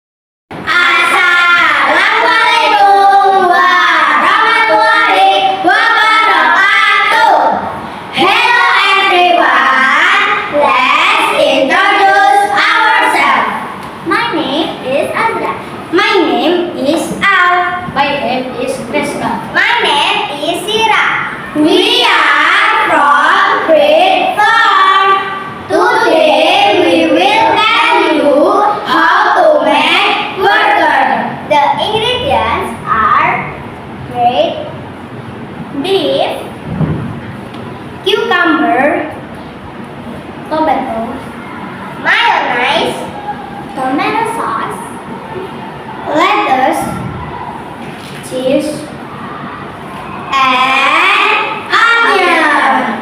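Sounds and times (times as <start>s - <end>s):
children singing: 0.7s - 7.5s, 21.6s - 30.9s.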